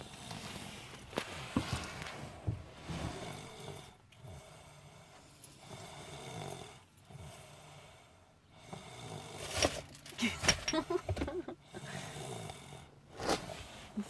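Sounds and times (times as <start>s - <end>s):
boy snoring: 3.0s - 7.5s, 8.6s - 9.8s, 11.7s - 14.0s.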